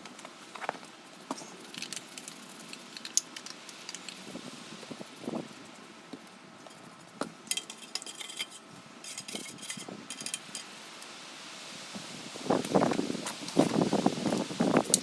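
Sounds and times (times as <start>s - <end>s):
fast rattling scrape: 1.2s - 5.8s
metal tools scraping an engine: 6.6s - 10.8s.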